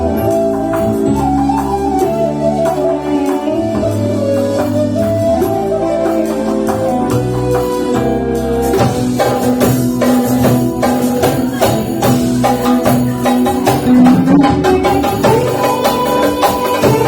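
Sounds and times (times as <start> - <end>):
steady percussion beat: 6.7 - 17.0
sustained melody notes: 13.6 - 15.6.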